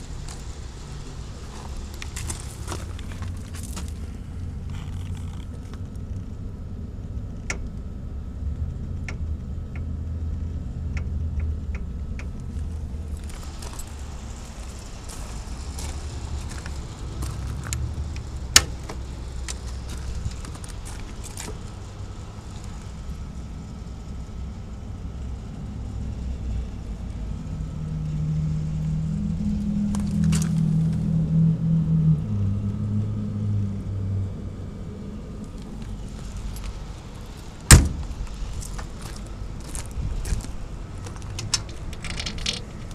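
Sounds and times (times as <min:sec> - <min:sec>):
diesel generator running: 0:00.0 - 0:42.9
hum shifting in pitch: 0:00.0 - 0:42.9.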